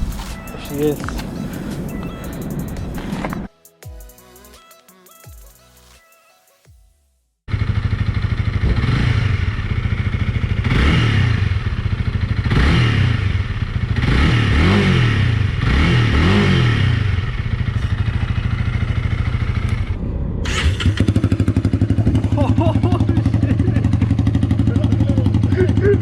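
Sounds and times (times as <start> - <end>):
motorcycle engine revving: 7.5 - 26.0.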